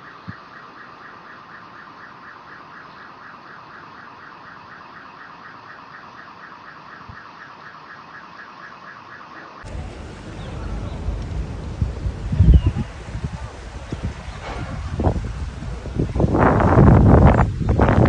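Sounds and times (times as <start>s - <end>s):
steady hiss: 0.0s - 18.0s
alarm beeping rapidly: 0.6s - 9.5s
low rumble: 9.6s - 18.0s.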